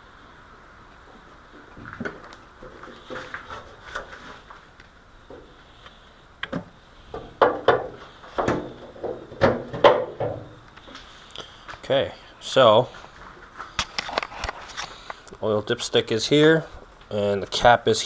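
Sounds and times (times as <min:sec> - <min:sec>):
knocks and clunks of handling: 0:06.4 - 0:10.6.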